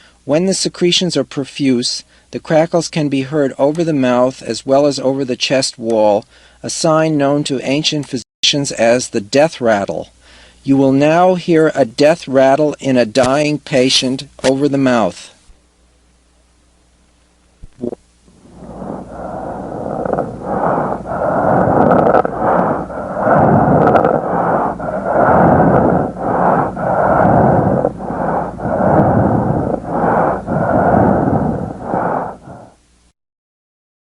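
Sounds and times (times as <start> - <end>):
crackling rattle of breathing: 5.9 - 6.7, 10.0 - 10.6, 17.8 - 32.9.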